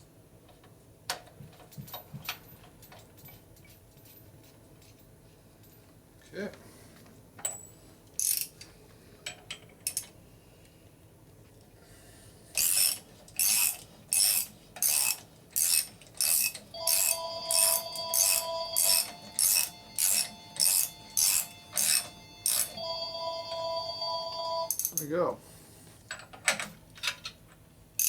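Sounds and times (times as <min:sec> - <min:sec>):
ratchet wrench clicking: 0:12.6 - 0:17.1
phone ringtone: 0:16.8 - 0:24.8.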